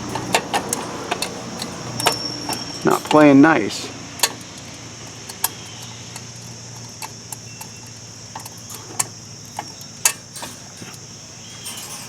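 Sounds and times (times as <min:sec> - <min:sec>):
metal parts and tools clicking: 0:00.0 - 0:12.0
steady high hiss: 0:00.0 - 0:12.0.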